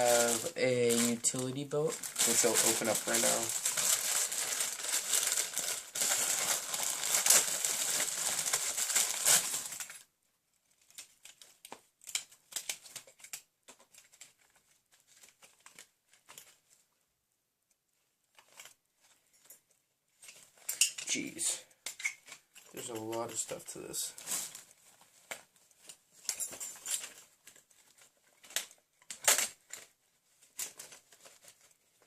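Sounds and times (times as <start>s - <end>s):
packaging crinkling: 0.0s - 10.1s, 20.3s - 32.0s
soft rustles and clicks: 9.3s - 32.0s.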